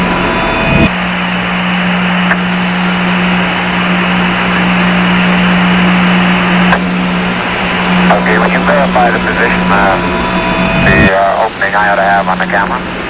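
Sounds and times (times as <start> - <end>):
low hum: 0.0 - 13.0
radio static hiss: 2.2 - 13.0.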